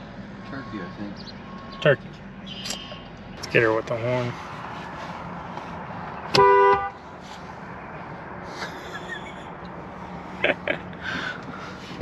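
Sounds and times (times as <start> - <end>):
vehicle horn honk: 0.5 - 1.9, 6.3 - 7.0.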